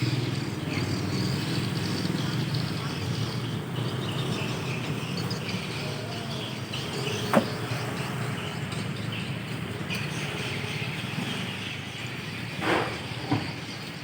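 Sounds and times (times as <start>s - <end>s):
birds twittering chirps: 0.0s - 14.0s
sharp knock: 7.3s - 7.6s
loud thud: 7.3s - 7.7s.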